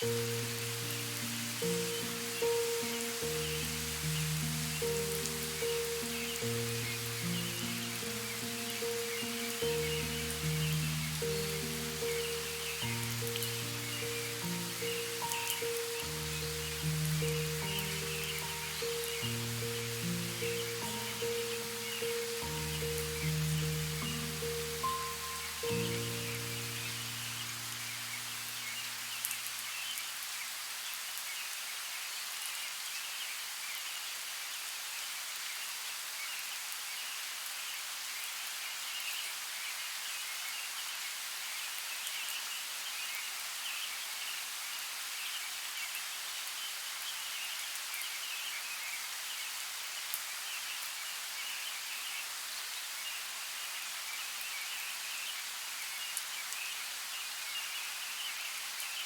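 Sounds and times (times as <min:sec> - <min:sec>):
soft music: 0:00.0 - 0:29.9
steady rain falling: 0:00.0 - 0:59.0.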